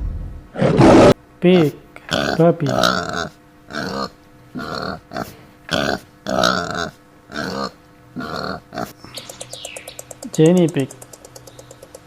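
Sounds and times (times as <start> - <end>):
pig grunting: 2.1 - 9.0.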